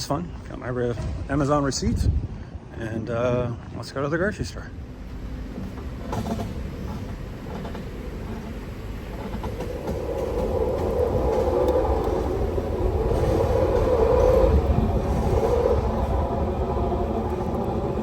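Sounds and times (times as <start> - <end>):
wind buffeting microphone: 0.9 - 2.8, 5.4 - 18.0
road rumble: 3.7 - 18.0.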